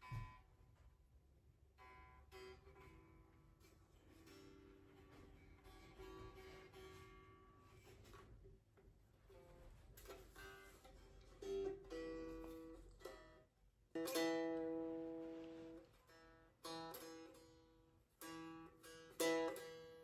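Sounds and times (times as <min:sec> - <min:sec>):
plucked string instrument strummed: 0:09.3 - 0:20.0.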